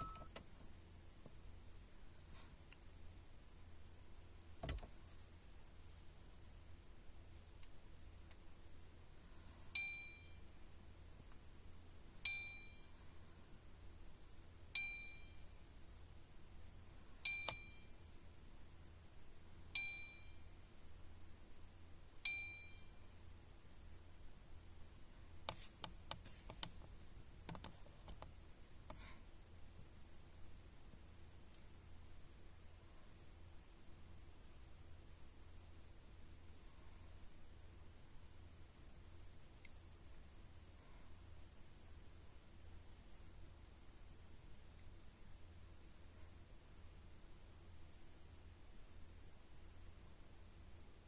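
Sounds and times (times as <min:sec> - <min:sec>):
dashboard warning chime dinging: 0:00.0 - 0:00.4, 0:09.8 - 0:10.5, 0:12.3 - 0:12.9, 0:14.8 - 0:15.5, 0:17.3 - 0:18.0, 0:19.8 - 0:20.5, 0:22.3 - 0:23.0.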